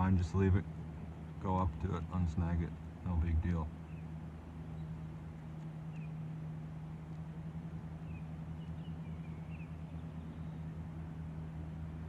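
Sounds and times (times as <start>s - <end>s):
steady low hum: 0.0s - 12.0s
faint bird chirps: 3.8s - 6.4s, 7.9s - 11.4s.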